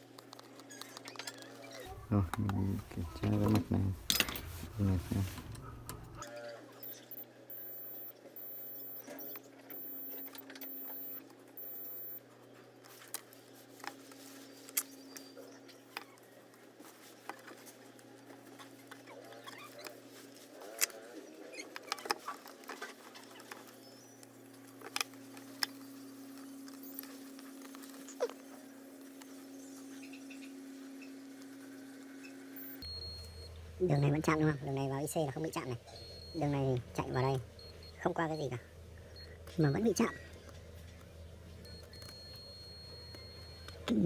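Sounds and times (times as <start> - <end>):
steady low hum: 1.8 - 18.8, 23.8 - 44.0
high-pitched multimeter beeps: 6.1 - 12.2, 32.6 - 40.5, 41.6 - 44.0.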